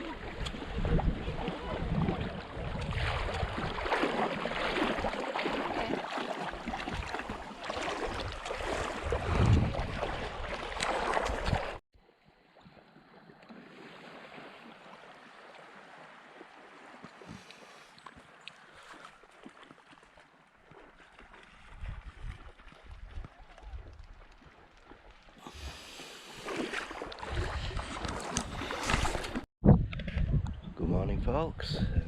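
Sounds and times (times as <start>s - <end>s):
wind blowing across microphone: 0.0s - 3.9s, 8.2s - 10.6s, 21.6s - 24.2s, 27.2s - 32.0s.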